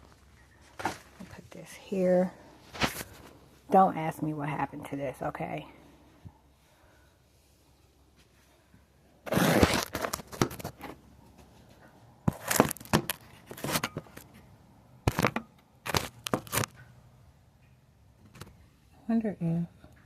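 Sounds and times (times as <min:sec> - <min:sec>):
rustling and crinkling: 0:00.0 - 0:03.8, 0:07.8 - 0:16.9.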